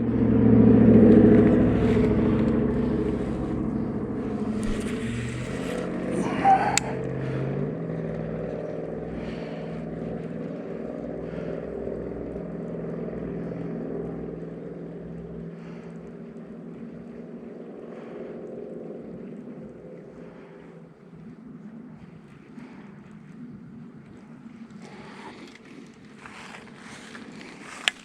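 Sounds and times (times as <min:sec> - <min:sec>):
motor engine running: 0:00.0 - 0:28.0.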